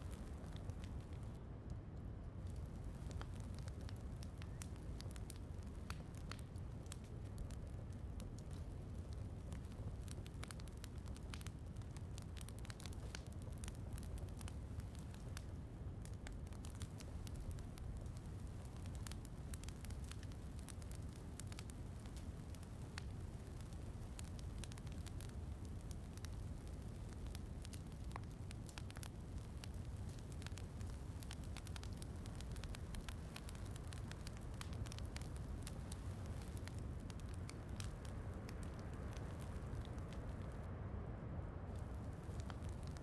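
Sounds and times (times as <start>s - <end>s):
wood fire crackling and popping: 0.0s - 40.7s, 41.7s - 43.0s.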